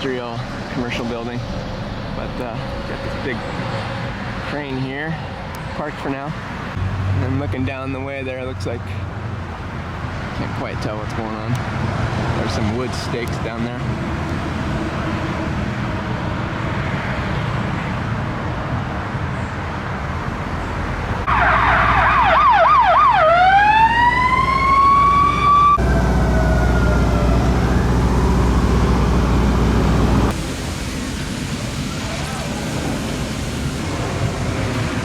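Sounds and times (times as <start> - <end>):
street traffic: 0.0 - 35.0
emergency siren wailing: 21.2 - 30.3.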